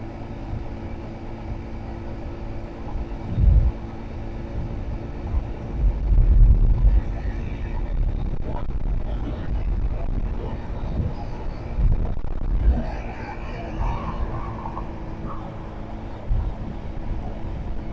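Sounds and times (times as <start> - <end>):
road traffic rumble: 0.0 - 17.9
vehicle passing close: 11.7 - 17.9.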